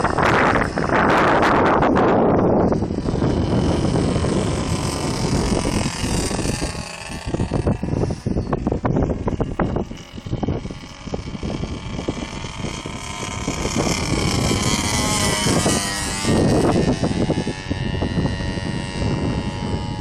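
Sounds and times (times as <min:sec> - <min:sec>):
model plane motor whining: 0:00.0 - 0:20.0
wind buffeting microphone: 0:00.0 - 0:20.0.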